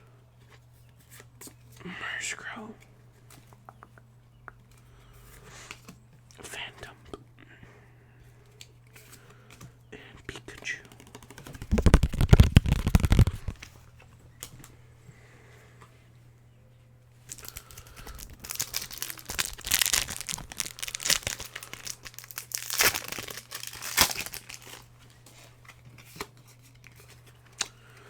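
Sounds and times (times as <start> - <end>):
foil wrapper tearing and crinkling: 11.2 - 13.6, 17.3 - 24.9.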